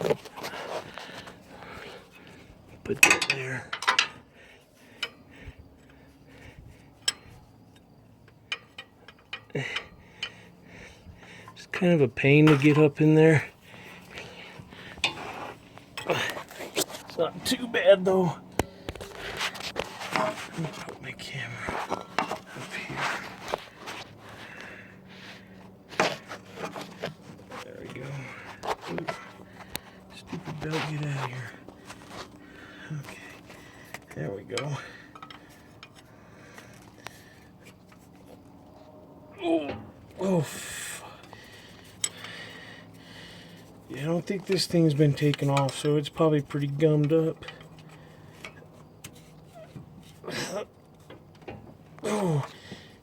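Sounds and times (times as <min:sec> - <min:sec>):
heavy breathing: 0:00.3 - 0:02.7, 0:03.5 - 0:07.7, 0:09.4 - 0:11.7, 0:13.4 - 0:17.1, 0:18.4 - 0:37.8, 0:40.2 - 0:43.9, 0:52.0 - 0:53.0.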